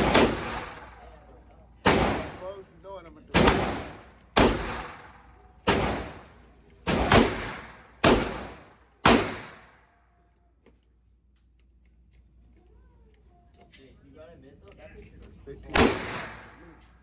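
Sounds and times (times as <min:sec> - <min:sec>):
gunshots with echo: 0:00.0 - 0:01.0, 0:01.8 - 0:02.6, 0:03.3 - 0:09.8, 0:15.7 - 0:16.8.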